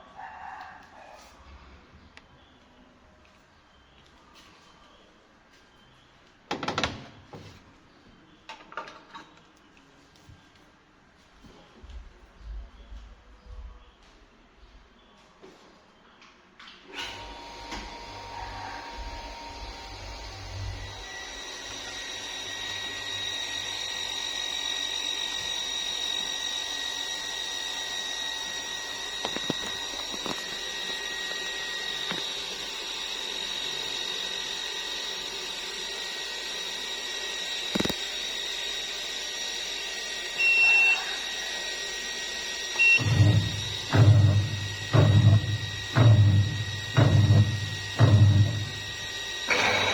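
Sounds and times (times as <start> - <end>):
washing machine motor whine: 16.9 - 49.9
short high beeps: 40.4 - 41.1
washing machine clicks: 42.8 - 49.2.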